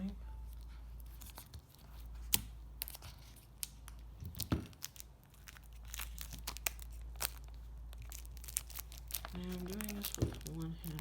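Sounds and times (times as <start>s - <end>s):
plastic packaging crinkling and tearing: 1.0s - 11.0s.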